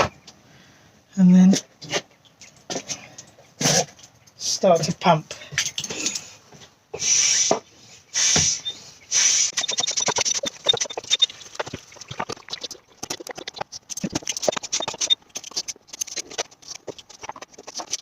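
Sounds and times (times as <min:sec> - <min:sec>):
oil gurgling through tube: 0:09.4 - 0:18.0.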